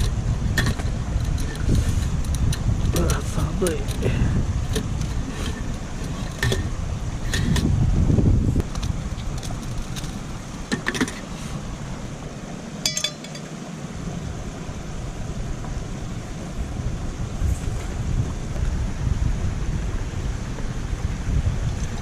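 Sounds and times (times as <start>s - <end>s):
wind buffeting microphone: 0.0s - 22.0s
metallic clink: 12.8s - 13.5s.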